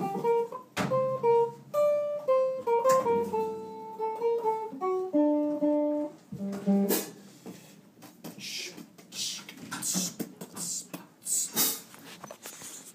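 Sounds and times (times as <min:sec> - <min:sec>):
acoustic guitar notes plucked: 0:00.0 - 0:07.2.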